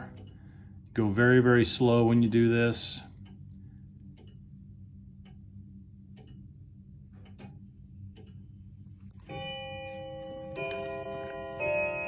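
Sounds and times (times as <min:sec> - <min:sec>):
clock ticking: 0:00.0 - 0:08.6
clock chime ringing: 0:09.2 - 0:12.0.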